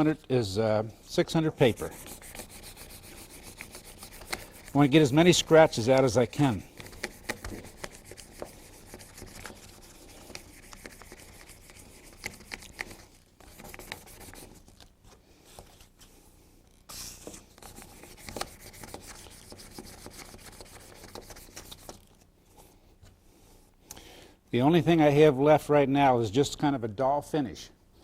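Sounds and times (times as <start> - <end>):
sandpaper rubbing on plastic: 1.5 - 14.8, 17.6 - 22.1.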